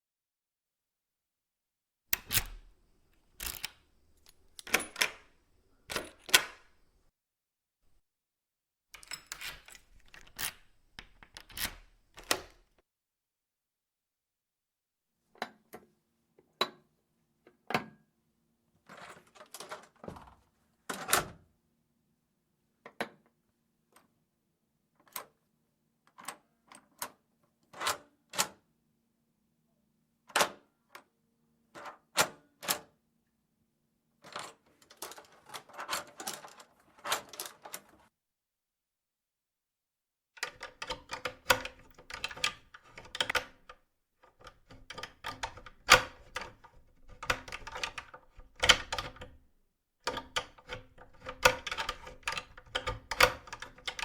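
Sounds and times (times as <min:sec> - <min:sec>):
metal door latch clicking: 0:02.2 - 0:02.7, 0:04.5 - 0:05.3.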